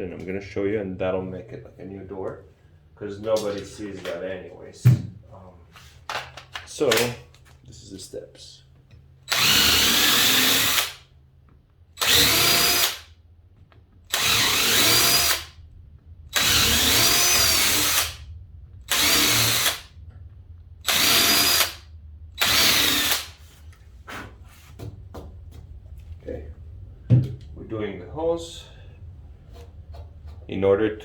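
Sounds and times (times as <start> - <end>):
power drill boring into wood: 9.3 - 11.0, 12.0 - 13.1, 14.1 - 15.6, 16.3 - 18.2, 18.9 - 19.9, 20.8 - 21.8, 22.4 - 23.4.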